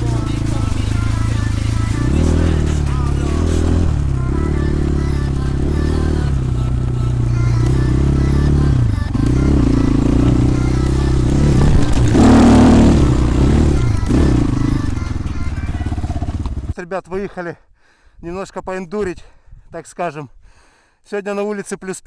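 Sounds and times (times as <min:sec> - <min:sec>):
motorcycle engine revving: 0:00.0 - 0:16.8.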